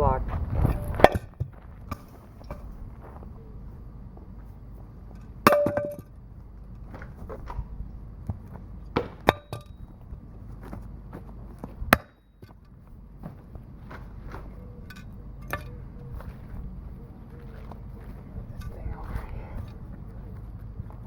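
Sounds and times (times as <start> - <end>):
hammer striking metal engine block: 5.5 - 6.1.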